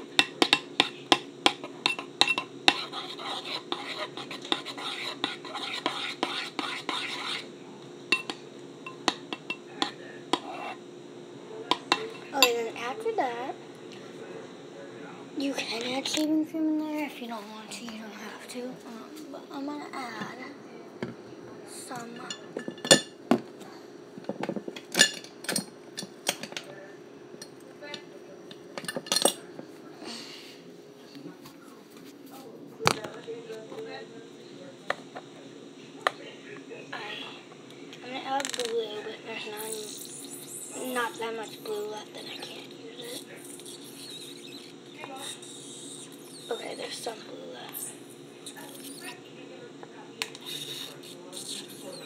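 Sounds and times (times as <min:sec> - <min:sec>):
utensil clinking against a bowl: 0:00.0 - 0:07.5, 0:08.1 - 0:10.7, 0:22.0 - 0:23.2, 0:27.4 - 0:29.5
spoon clinking against bowl: 0:00.2 - 0:02.5, 0:08.1 - 0:10.0
spoon scraping bowl: 0:00.5 - 0:07.5, 0:08.9 - 0:10.8, 0:39.4 - 0:49.2, 0:50.2 - 0:52.0.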